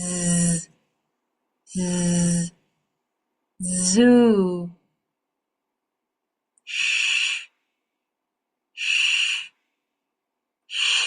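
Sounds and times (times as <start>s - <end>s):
person saying sh: 0.0s - 0.8s, 1.7s - 2.6s, 3.6s - 4.8s, 10.7s - 11.0s.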